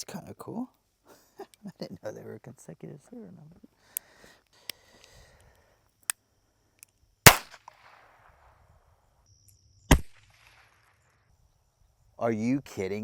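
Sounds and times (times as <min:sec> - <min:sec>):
pistol shots: 0:07.3 - 0:08.3, 0:09.9 - 0:10.8.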